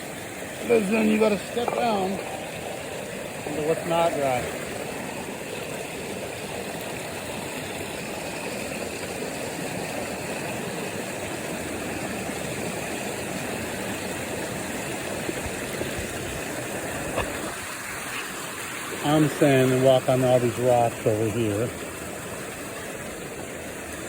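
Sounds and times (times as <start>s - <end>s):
river flowing over rocks: 0.0s - 24.0s.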